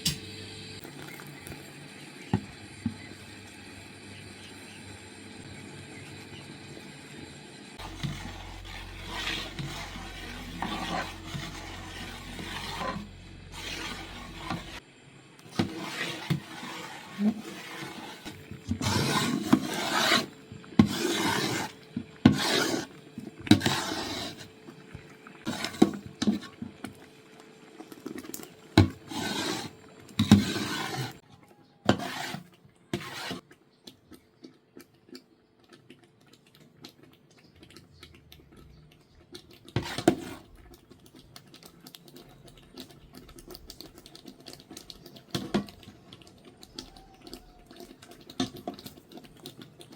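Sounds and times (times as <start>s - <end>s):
utensil scraping cookware: 7.8s - 14.8s, 15.5s - 24.5s, 25.4s - 26.6s, 28.8s - 31.2s, 31.8s - 33.4s
low hum: 7.8s - 15.4s.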